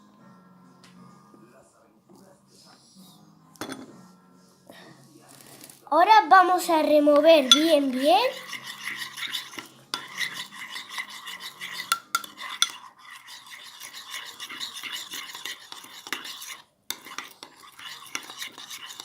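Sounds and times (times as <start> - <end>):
spoon stirring wet slime: 6.5 - 19.0.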